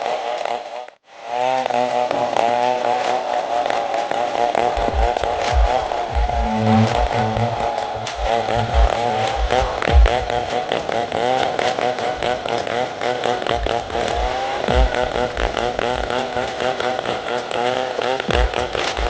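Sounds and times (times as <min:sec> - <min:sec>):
low thumps: 0:04.8 - 0:10.4
chainsaw cutting under load: 0:10.1 - 0:19.0.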